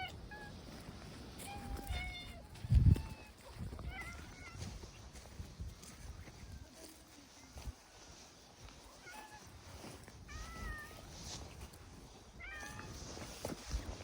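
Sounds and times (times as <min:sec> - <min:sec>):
cat meowing: 0:03.9 - 0:04.6, 0:12.4 - 0:13.0.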